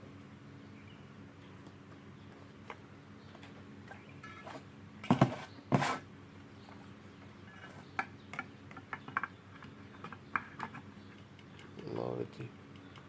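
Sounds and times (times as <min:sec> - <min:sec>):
small metal clicks and taps: 0:08.0 - 0:12.1, 0:12.7 - 0:13.0.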